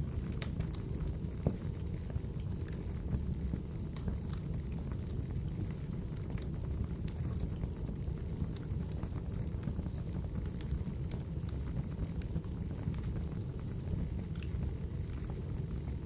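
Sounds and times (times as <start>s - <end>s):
low rumble of flames: 0.0s - 16.0s
wood crackling and popping: 0.0s - 16.0s.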